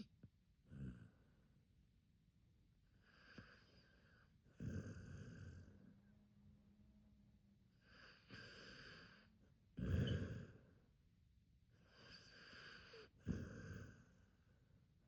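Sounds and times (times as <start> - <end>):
dog snoring: 0.6 - 1.4, 3.0 - 6.0, 7.8 - 10.9, 11.8 - 14.4.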